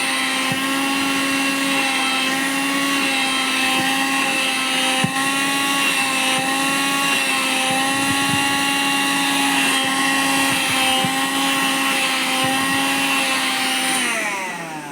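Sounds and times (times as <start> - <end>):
vacuum cleaner motor whine: 0.0 - 14.9.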